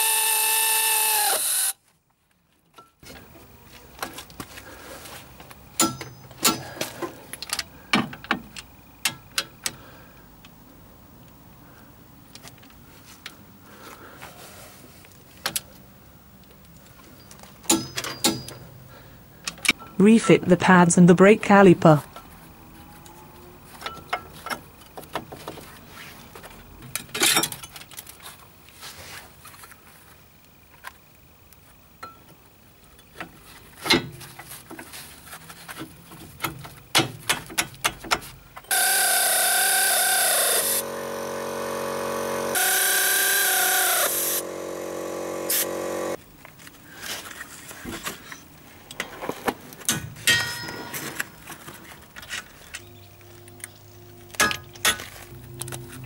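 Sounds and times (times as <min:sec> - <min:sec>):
power drill running: 0:00.0 - 0:01.8, 0:38.7 - 0:46.2.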